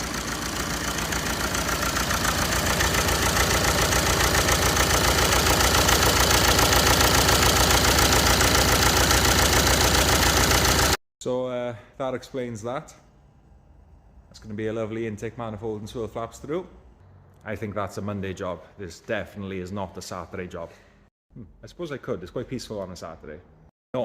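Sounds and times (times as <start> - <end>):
diesel engine idling with misfire: 0.0 - 11.0.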